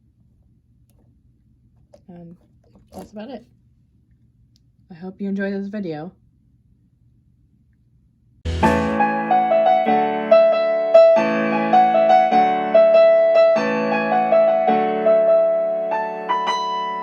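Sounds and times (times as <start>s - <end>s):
electric piano melody: 8.5s - 17.0s.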